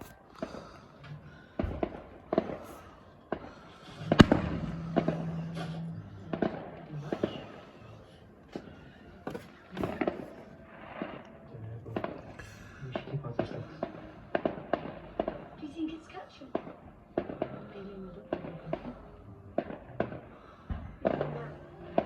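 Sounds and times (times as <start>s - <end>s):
fireworks banging: 0.0s - 22.0s.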